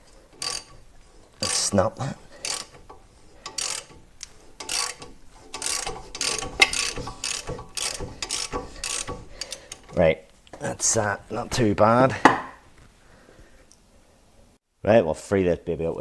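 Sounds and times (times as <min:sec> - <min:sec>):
socket ratchet clicking: 0:02.4 - 0:10.0.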